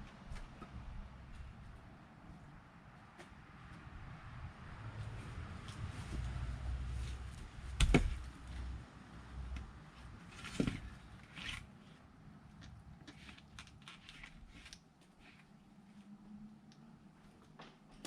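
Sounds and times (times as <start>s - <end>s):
axe striking firewood: 7.8s - 8.3s.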